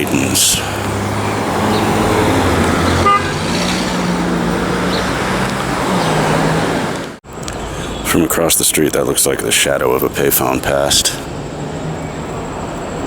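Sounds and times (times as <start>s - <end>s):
car horn toot: 2.8s - 3.6s.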